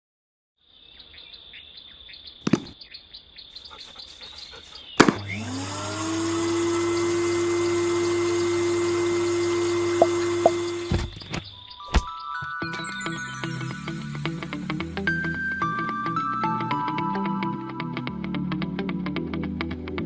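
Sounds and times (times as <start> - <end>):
handheld vacuum motor whine: 5.0 - 11.5.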